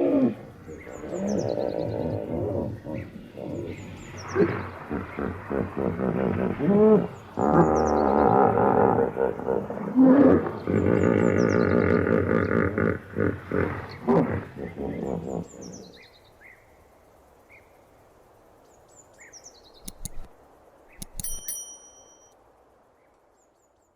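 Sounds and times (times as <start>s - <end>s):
small birds chirping: 18.5s - 22.3s
sharp clicks: 19.8s - 20.3s, 20.9s - 22.3s.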